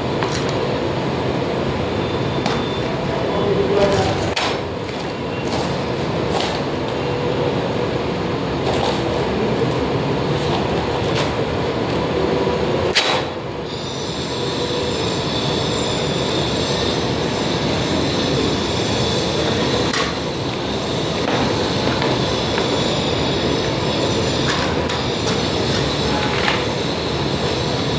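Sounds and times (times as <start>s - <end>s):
rough metalworking noise: 13.0s - 27.9s
high steady whine: 13.6s - 27.9s.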